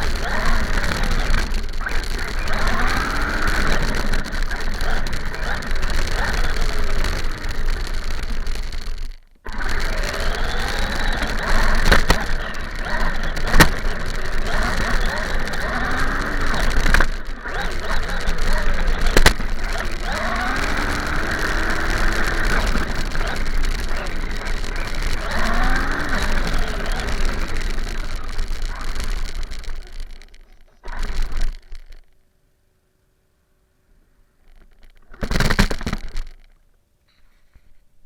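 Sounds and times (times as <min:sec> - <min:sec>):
rc car motor revving: 0:00.0 - 0:32.1
sharp clicks: 0:00.0 - 0:32.2.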